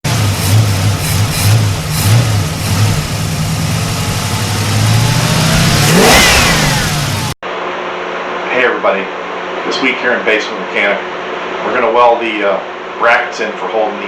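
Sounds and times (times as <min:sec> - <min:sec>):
vehicle engine revving: 0:00.0 - 0:07.4.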